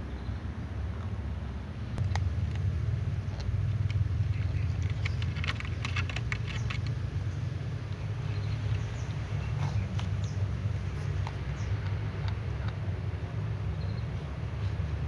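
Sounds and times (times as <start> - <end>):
steady low rumble: 0.0 - 14.9
small clicks and ticks: 2.0 - 9.2.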